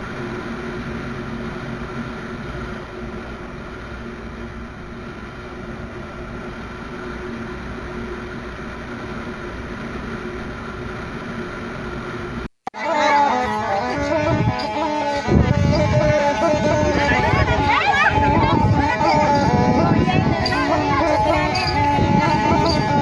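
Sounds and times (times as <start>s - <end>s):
wind noise: 13.4s - 23.0s.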